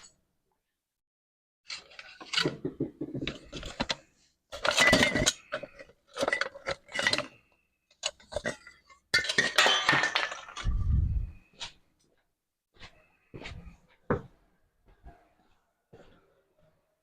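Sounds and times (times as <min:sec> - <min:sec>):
metal objects clinking: 0:01.7 - 0:10.9.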